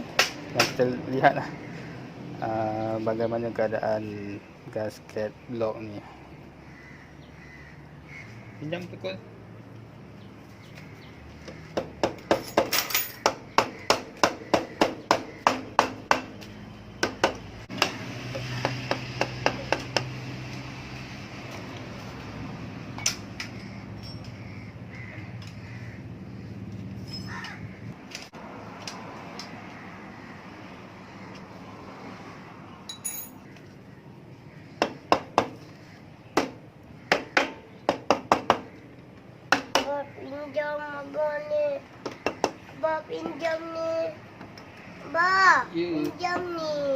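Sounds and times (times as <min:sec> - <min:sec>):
hammer tapping on metal engine: 0:11.5 - 0:18.0, 0:18.6 - 0:20.1, 0:36.4 - 0:38.7
ringing metallic clink: 0:24.0 - 0:24.4, 0:27.0 - 0:27.3, 0:32.9 - 0:33.4.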